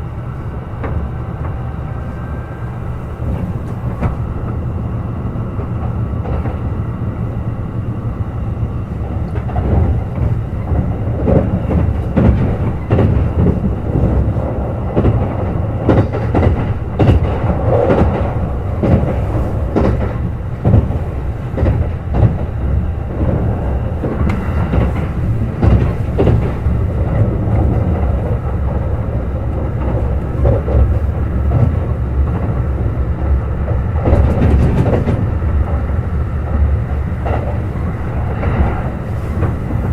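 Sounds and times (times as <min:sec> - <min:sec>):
train rumbling at speed: 0:00.0 - 0:39.9
wheels clacking over rails: 0:09.0 - 0:39.9.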